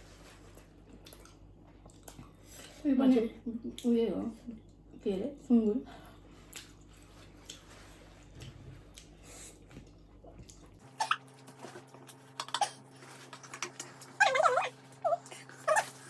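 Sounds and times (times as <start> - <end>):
low background hum: 0.0 - 16.0
chewing with wet mouth noises: 0.4 - 2.8, 6.3 - 12.3.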